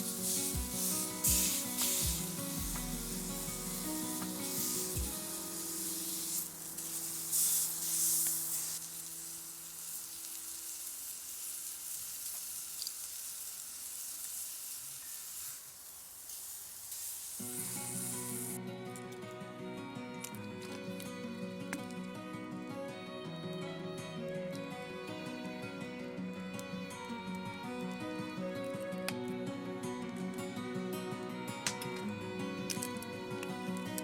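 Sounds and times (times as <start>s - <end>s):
background music: 0.0s - 8.6s, 17.5s - 34.0s
meat sizzling in a pan: 0.0s - 18.6s.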